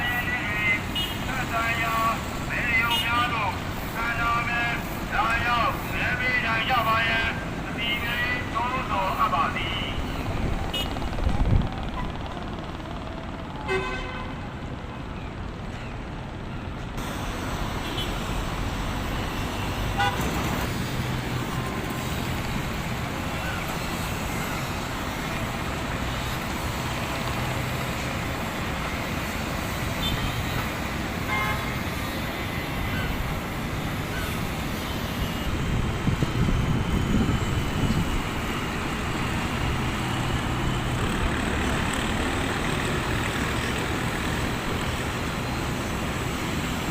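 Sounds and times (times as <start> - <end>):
traffic noise: 0.0 - 46.9
car horn toots: 13.7 - 14.3, 20.0 - 20.4, 31.3 - 31.8.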